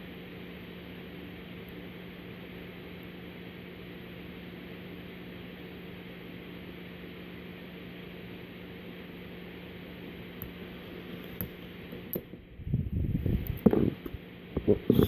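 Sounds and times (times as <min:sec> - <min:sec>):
background hiss and hum: 0:00.0 - 0:15.0.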